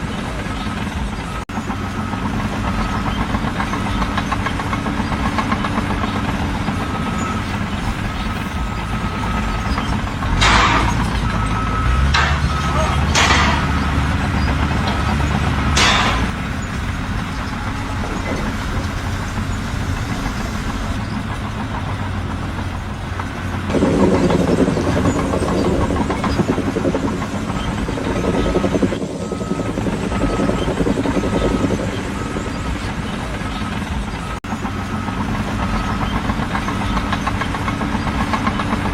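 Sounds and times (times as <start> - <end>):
diesel engine running: 0.0 - 38.9
faint beeps: 11.2 - 15.4.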